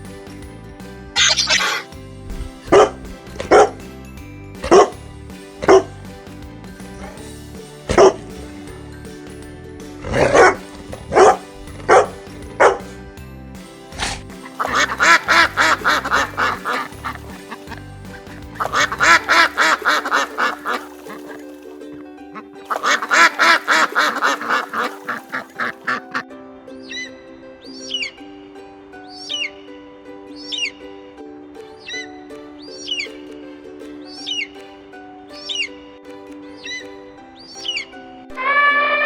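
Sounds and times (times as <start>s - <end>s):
background music with held chord: 0.0s - 39.0s
duck quacking: 14.0s - 21.4s, 22.4s - 26.2s.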